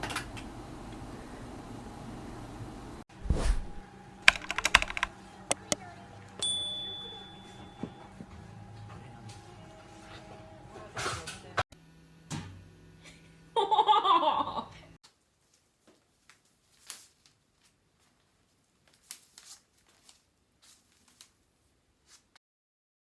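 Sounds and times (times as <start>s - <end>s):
faint clicks and taps: 4.3s - 5.8s.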